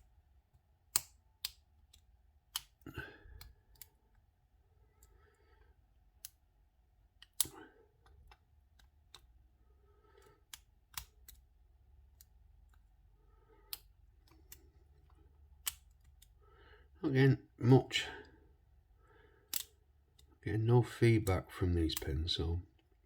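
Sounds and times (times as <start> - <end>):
lock pick metallic clicks: 0.9 - 2.8, 7.2 - 9.3, 10.2 - 11.5, 19.5 - 20.3.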